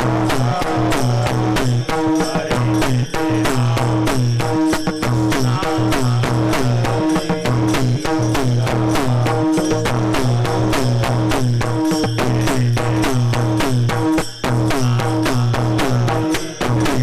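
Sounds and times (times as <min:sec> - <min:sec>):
fast drum and percussion rhythm: 0:00.0 - 0:17.0
repeating low pitched tone: 0:00.0 - 0:17.0.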